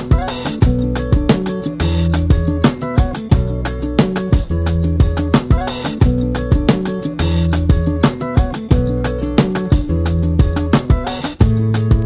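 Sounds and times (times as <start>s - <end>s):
upbeat guitar music: 0.0s - 12.0s.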